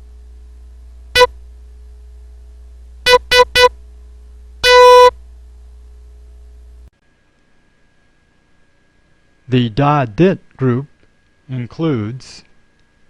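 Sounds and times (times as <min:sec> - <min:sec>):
steady low hum: 0:00.0 - 0:13.0
morse code tone: 0:03.1 - 0:03.7, 0:04.6 - 0:05.1.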